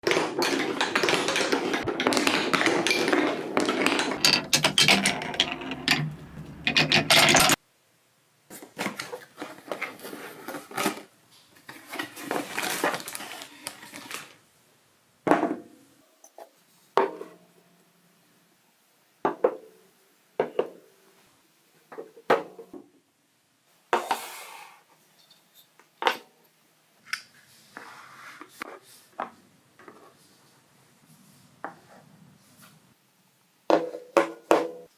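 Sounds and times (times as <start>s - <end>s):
marbles clattering down track: 4.1s - 7.6s.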